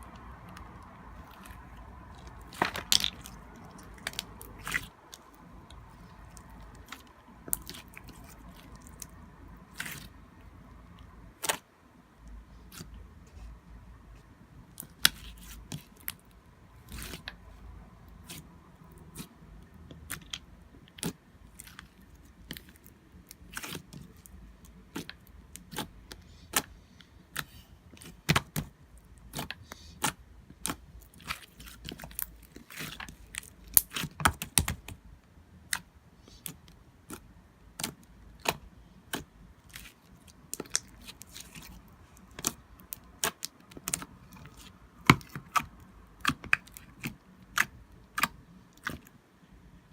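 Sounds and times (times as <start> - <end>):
slime squished by hand: 19.9 - 35.0, 35.7 - 49.1.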